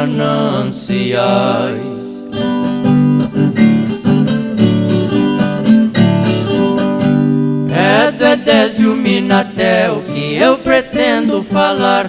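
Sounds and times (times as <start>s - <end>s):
plucked guitar-like strings: 2.4s - 8.0s.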